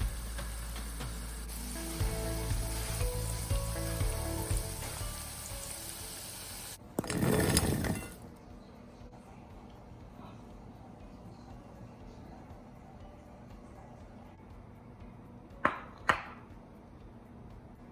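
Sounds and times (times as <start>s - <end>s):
food sizzling in hot oil: 0.0s - 8.2s.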